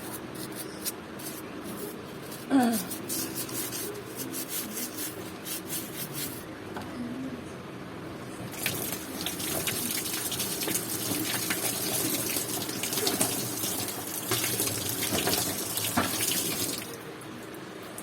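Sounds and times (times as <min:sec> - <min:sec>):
running water splashing: 0:08.6 - 0:17.0.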